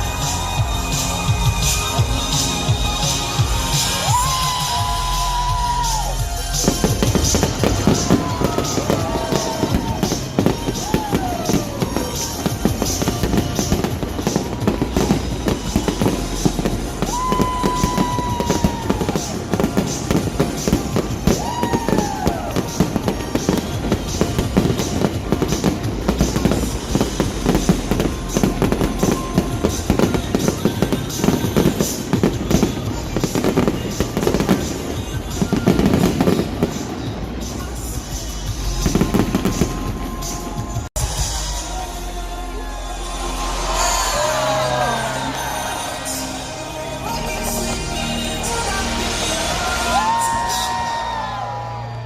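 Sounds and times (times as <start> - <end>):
fireworks popping and banging: 0.0 - 41.3
whistling firework tones: 0.0 - 41.6.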